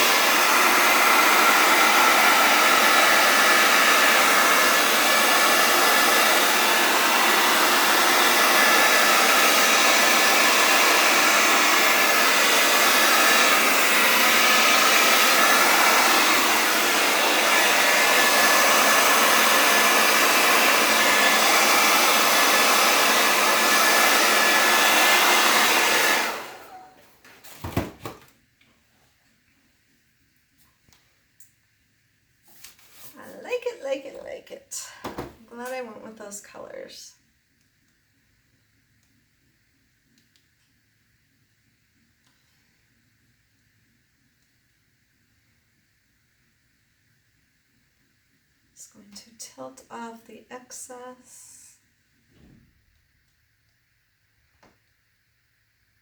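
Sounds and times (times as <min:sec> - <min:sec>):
hair dryer blowing: 0:00.0 - 0:27.0, 0:33.1 - 0:36.4.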